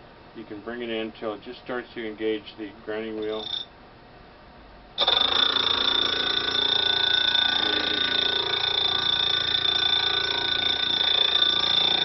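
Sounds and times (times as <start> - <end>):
high-pitched grinding wheel whine: 3.2 - 3.7, 5.0 - 12.0.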